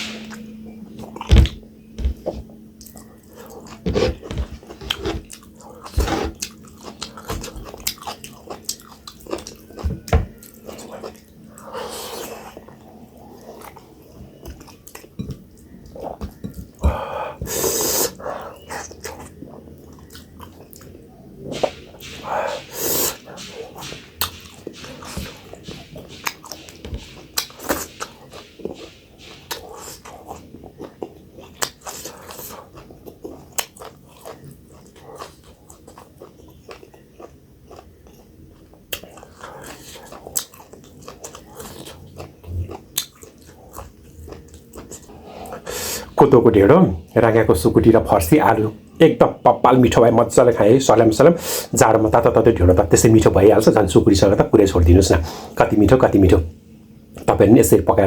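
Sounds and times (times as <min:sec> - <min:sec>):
person chewing food: 0:01.0 - 0:46.2.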